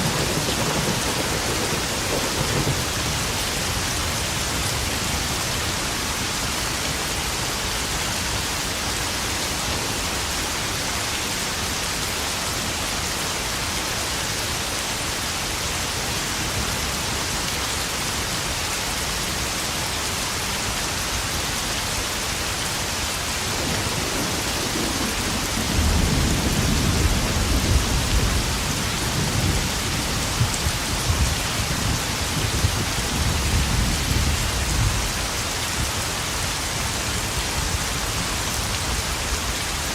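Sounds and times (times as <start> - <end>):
rolling thunder: 0.0 - 5.4, 23.5 - 35.9
heavy rain on puddles: 0.0 - 39.9.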